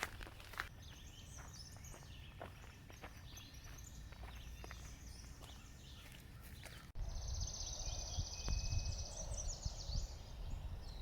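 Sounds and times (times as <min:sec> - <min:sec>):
footsteps on forest trail: 0:00.0 - 0:07.0.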